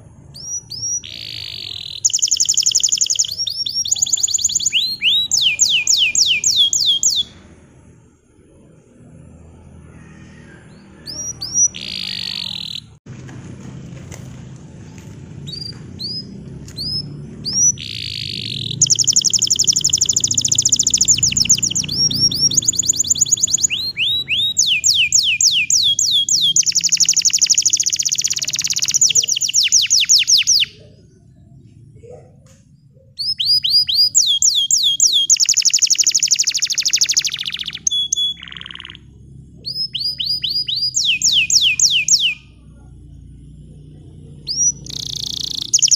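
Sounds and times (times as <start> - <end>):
canary singing: 0.0 - 13.0, 15.4 - 45.9
fast high bird trills: 0.4 - 7.4, 10.0 - 13.0, 15.4 - 30.8, 33.2 - 42.6, 44.4 - 45.9.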